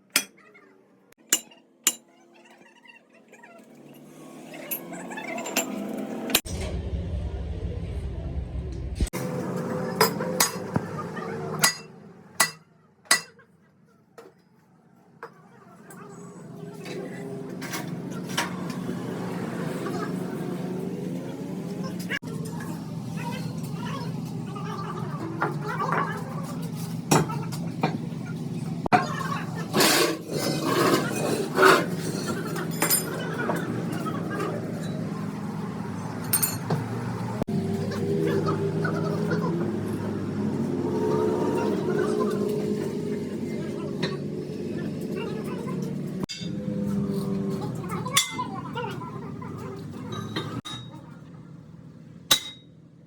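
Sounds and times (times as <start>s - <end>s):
hammer striking metal: 1.3s - 2.0s, 11.6s - 13.3s, 52.3s - 52.6s
machine hum: 4.0s - 10.0s
metal scraping: 4.1s - 9.2s
metal tools clinking on metal: 36.3s - 36.8s, 46.3s - 46.6s.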